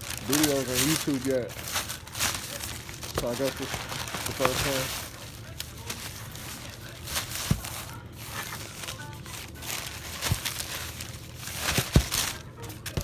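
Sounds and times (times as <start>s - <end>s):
paper wrapping rustling: 0.0s - 13.0s
cardboard box thumps: 1.6s - 5.2s, 5.9s - 8.9s, 9.6s - 13.0s.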